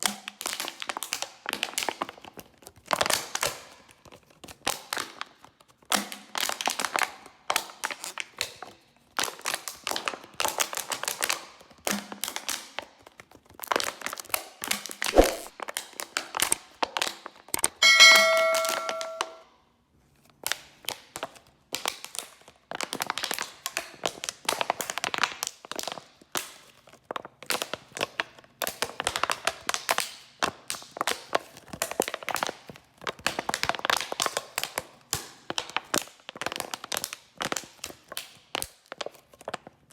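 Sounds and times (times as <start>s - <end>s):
bottle struck ringing: 17.8s - 19.4s.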